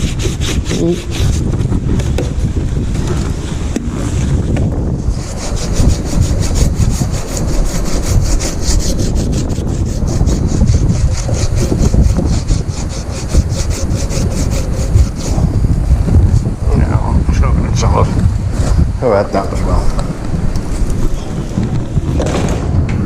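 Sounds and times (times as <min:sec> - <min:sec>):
rhythmic rasping scrape: 0:00.0 - 0:03.2, 0:05.0 - 0:15.6
wind buffeting microphone: 0:00.0 - 0:23.0.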